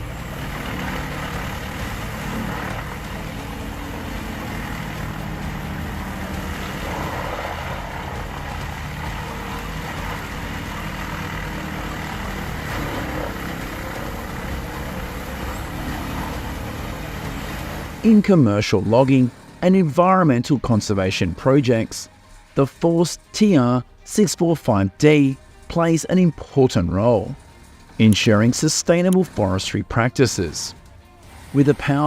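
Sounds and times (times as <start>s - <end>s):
wood chipper engine running: 0.0s - 18.2s.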